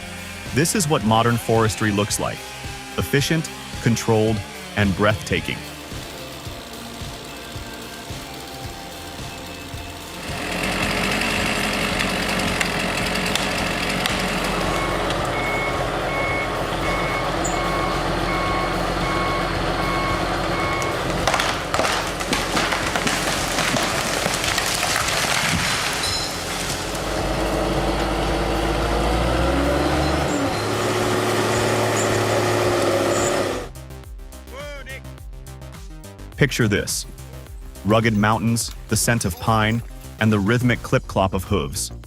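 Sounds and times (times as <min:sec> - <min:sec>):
diesel engine running: 0:00.0 - 0:34.0, 0:37.0 - 0:40.9
reversing alarm beeping: 0:14.6 - 0:21.1, 0:29.6 - 0:33.4
sharp knocks and crashes: 0:20.8 - 0:27.1.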